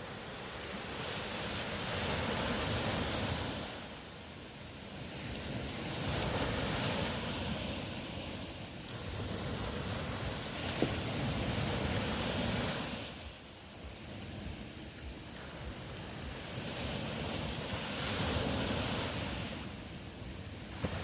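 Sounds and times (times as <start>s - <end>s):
ocean surf washing ashore: 0.0s - 21.0s.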